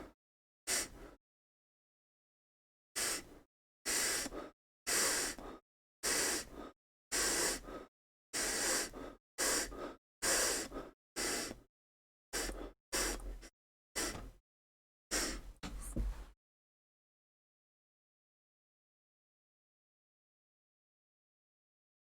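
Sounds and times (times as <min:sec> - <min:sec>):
person sniffing sharply: 0:00.7 - 0:01.2, 0:03.0 - 0:11.7, 0:12.4 - 0:14.4, 0:15.1 - 0:16.0.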